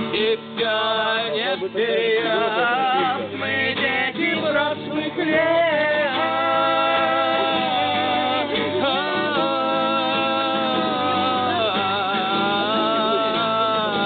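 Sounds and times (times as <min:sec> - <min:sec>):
group singing long notes: 0:00.0 - 0:14.0.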